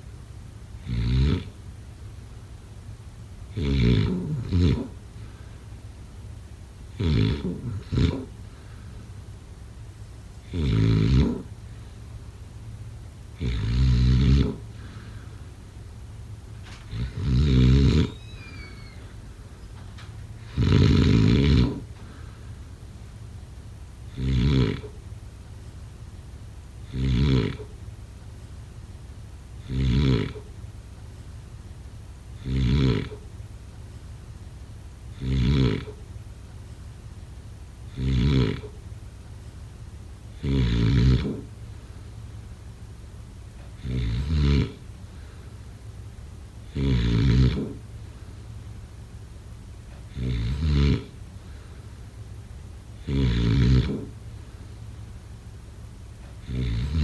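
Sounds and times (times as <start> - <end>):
person snoring with rattle: 0.8 - 1.6, 3.5 - 5.5, 6.9 - 8.8, 10.4 - 11.6, 13.4 - 15.4, 16.6 - 19.2, 20.4 - 22.4, 24.1 - 25.0, 26.8 - 27.8, 29.6 - 30.5, 32.4 - 33.3, 35.1 - 36.0, 37.9 - 38.8, 40.3 - 41.6, 43.7 - 45.4, 46.6 - 47.9, 49.9 - 51.2, 53.0 - 54.2, 56.2 - 57.0
person snoring: 3.6 - 5.0, 10.5 - 11.5, 13.4 - 15.1, 16.9 - 18.2, 20.4 - 21.9, 40.4 - 41.5, 43.8 - 44.8, 46.7 - 47.8, 50.1 - 51.1, 53.0 - 54.2, 56.4 - 57.0.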